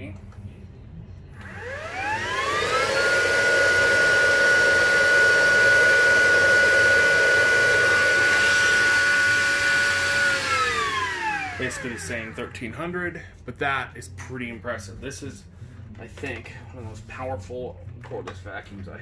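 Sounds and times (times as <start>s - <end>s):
cordless vacuum motor whine: 1.4s - 12.6s.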